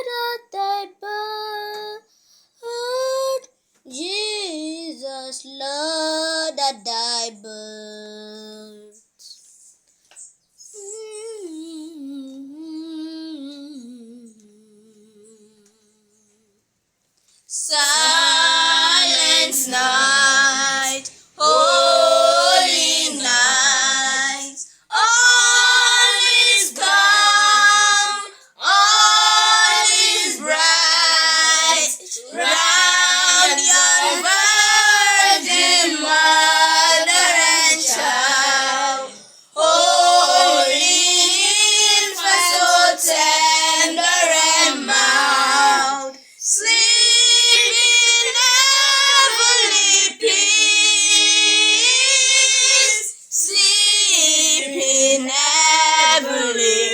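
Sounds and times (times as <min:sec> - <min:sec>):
singer breathing: 0:02.1 - 0:02.6
woman singing: 0:02.6 - 0:09.4, 0:10.6 - 0:16.4, 0:17.5 - 0:56.9.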